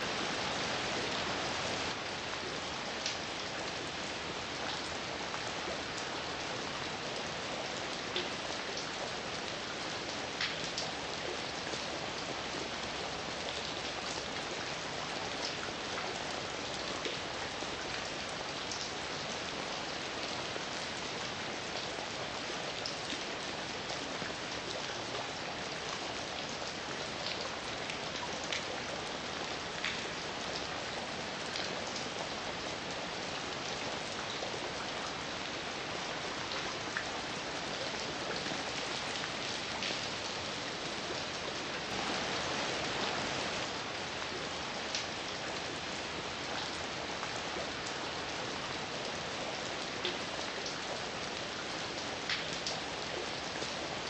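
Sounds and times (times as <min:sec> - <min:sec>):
raindrops ticking on a surface: 0:00.3 - 0:54.0
heavy rain hissing: 0:41.8 - 0:44.0.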